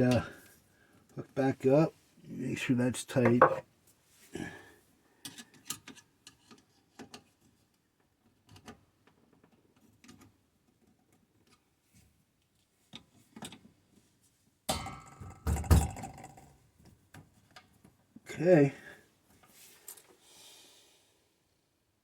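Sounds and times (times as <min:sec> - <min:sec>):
rustling and knocking handling: 0:03.2 - 0:03.6
tool clicks and taps: 0:03.2 - 0:03.6.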